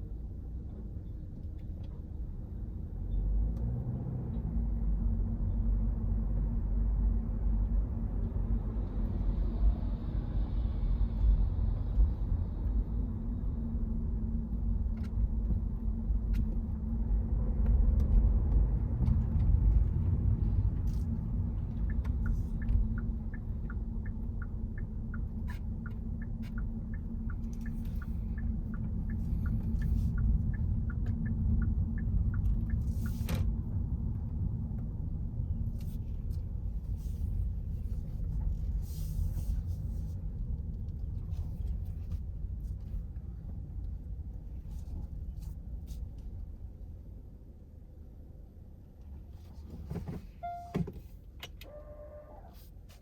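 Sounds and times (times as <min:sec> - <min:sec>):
regular ticking: 0:21.8 - 0:33.1.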